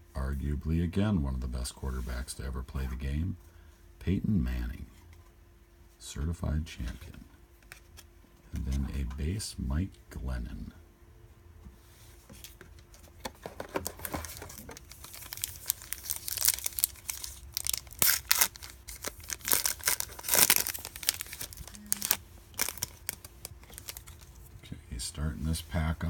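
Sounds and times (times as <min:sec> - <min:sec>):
wrapper tearing and crinkling: 0:13.8 - 0:24.4.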